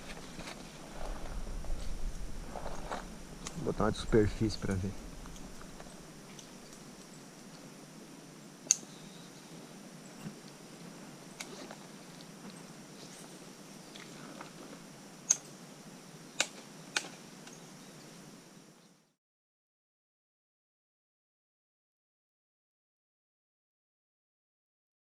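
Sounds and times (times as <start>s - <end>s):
faint steady hiss: 0.0s - 19.2s.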